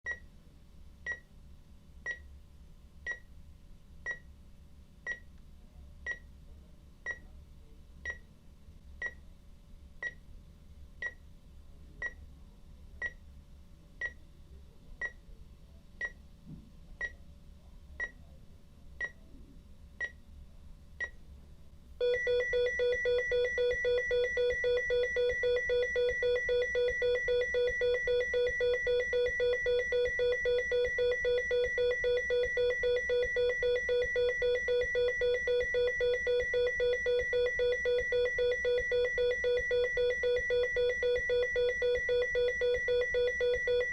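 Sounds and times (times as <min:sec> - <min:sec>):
continuous flatline tone: 0:22.0 - 0:43.9
heart monitor beeping: 0:22.0 - 0:43.9.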